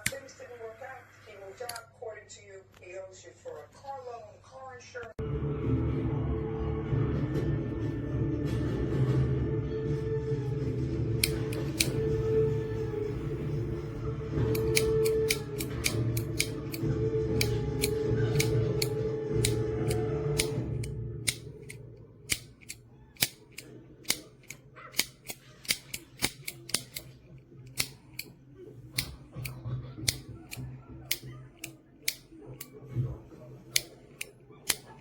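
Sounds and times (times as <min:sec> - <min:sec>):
sharp dry clicks: 0:11.2 - 0:12.0, 0:14.5 - 0:28.3, 0:30.1 - 0:32.7, 0:33.7 - 0:35.0.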